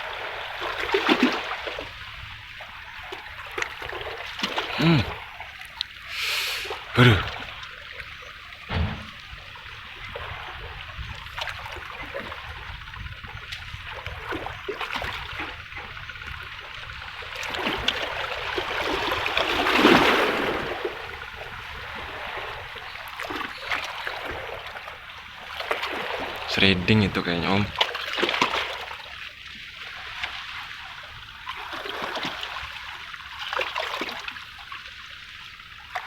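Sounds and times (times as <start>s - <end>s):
water lapping against rocks: 3.0s - 7.6s, 8.7s - 9.4s, 11.3s - 34.8s.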